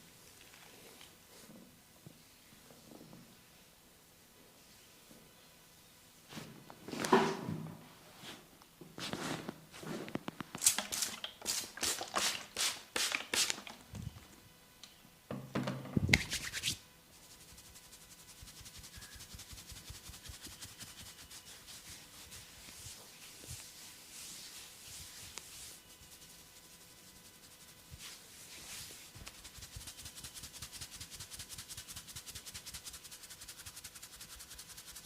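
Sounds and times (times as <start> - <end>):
hands rubbing oiled skin: 16.1 - 35.0.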